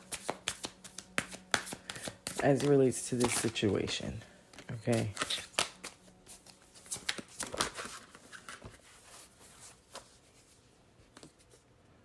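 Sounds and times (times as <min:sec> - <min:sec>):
cards being shuffled: 0:00.0 - 0:11.6.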